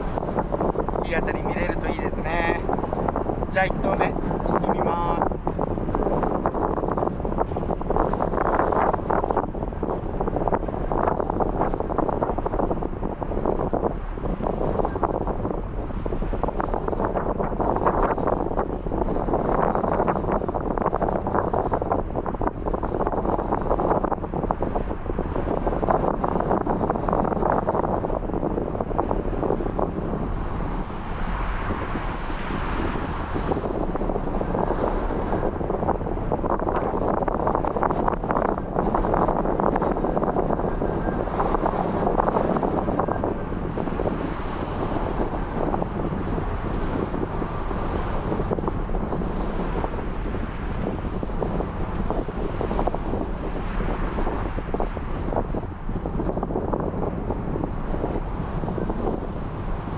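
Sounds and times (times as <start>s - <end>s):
wind buffeting microphone: 0.0s - 59.9s.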